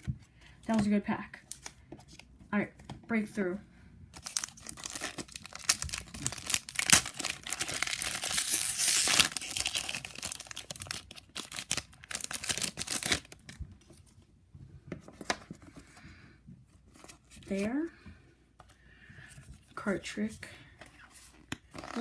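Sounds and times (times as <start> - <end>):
foil wrapper tearing and crinkling: 4.2 - 13.4.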